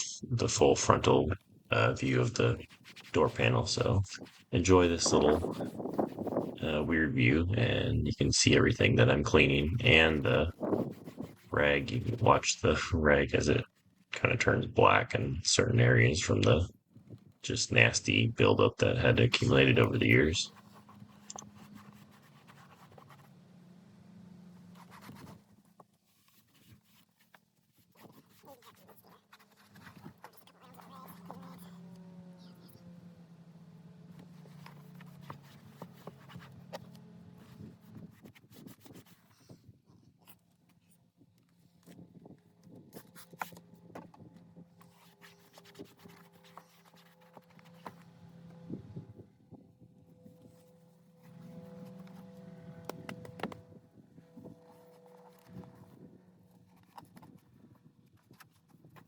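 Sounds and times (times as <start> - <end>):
rag rubbing on plastic: 0.8 - 14.0, 17.0 - 39.6, 41.8 - 49.1, 50.2 - 59.0
short scrapes and clicks: 40.3 - 48.8
low hum: 41.8 - 57.0.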